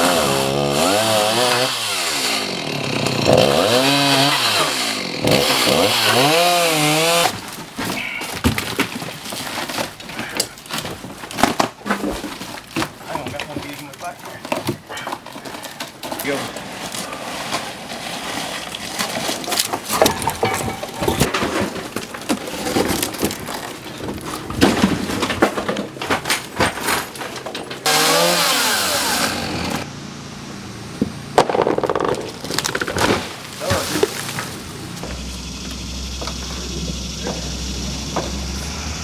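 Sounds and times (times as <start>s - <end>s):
power saw running: 0.0s - 7.4s, 27.8s - 39.0s
material knocking and cracking: 31.4s - 34.5s.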